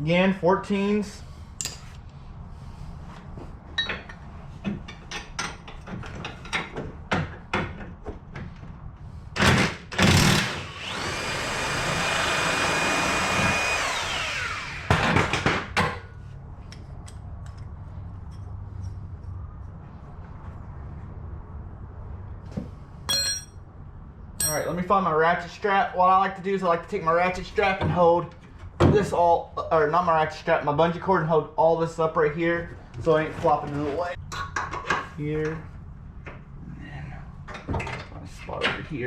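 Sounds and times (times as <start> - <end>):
impact wrench bursts and whine: 9.4 - 15.2.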